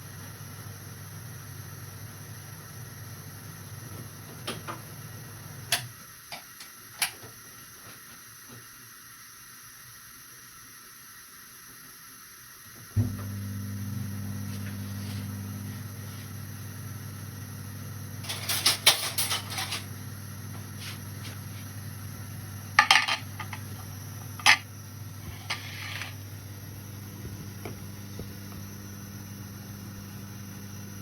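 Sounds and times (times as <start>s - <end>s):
steady low hum: 13.0s - 31.0s
dishes and utensils clattering: 18.2s - 19.9s, 22.8s - 23.6s.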